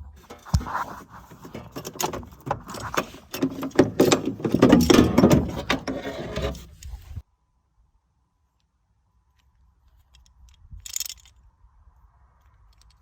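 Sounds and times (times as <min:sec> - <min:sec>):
metal tools clicking and rattling: 0:00.2 - 0:07.0.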